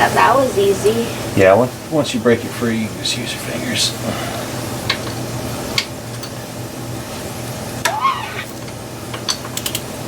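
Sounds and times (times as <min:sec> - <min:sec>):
steady background hum: 0:00.0 - 0:10.0.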